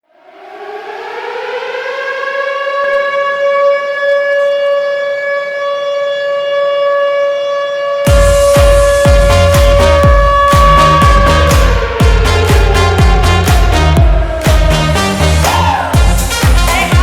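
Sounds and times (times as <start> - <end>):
goal siren wailing: 0.0 - 17.0
song with thumping beat: 8.1 - 17.0.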